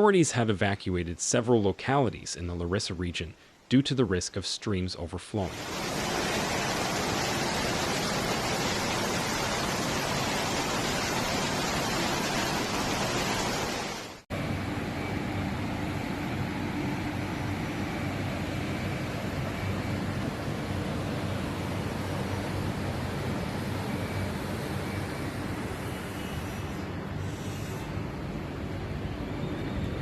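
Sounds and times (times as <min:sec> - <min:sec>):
floodwater rushing: 0:05.5 - 0:14.2
rain: 0:05.5 - 0:14.3.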